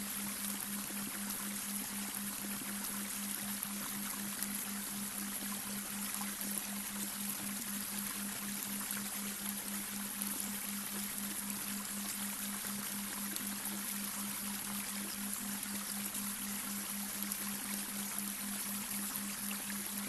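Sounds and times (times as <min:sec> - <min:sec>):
brook water running: 0:00.0 - 0:20.0
low pulsing hum: 0:00.0 - 0:20.0.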